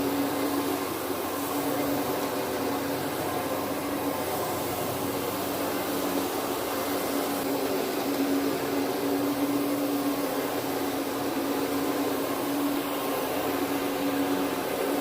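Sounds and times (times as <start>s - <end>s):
carpet cleaning machine running: 0.0s - 15.0s.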